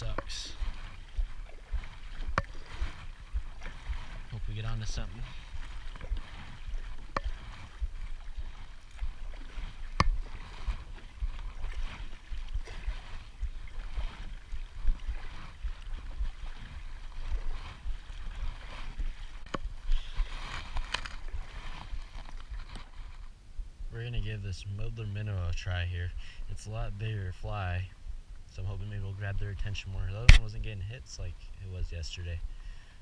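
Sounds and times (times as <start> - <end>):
wind buffeting microphone: 0.0 - 24.3
water lapping against hull: 0.0 - 33.0.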